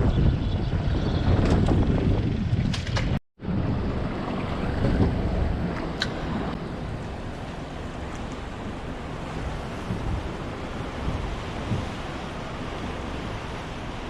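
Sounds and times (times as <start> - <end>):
wind buffeting microphone: 0.0 - 14.0
waves washing on shore: 3.7 - 14.0.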